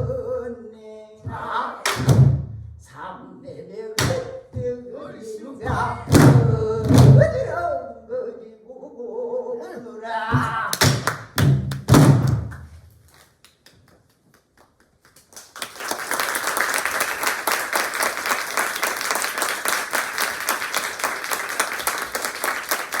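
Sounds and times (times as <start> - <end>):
audience applause: 15.0 - 23.0.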